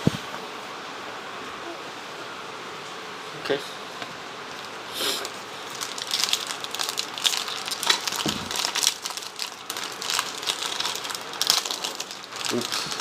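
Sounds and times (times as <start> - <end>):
foil wrapper crinkling: 4.6 - 13.0.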